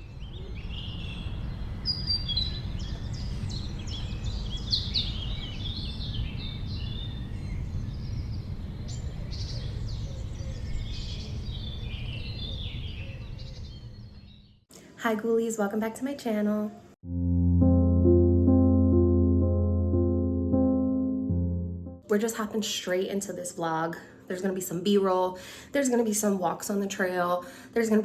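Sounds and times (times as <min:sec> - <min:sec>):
low rumble: 0:17.1 - 0:22.0.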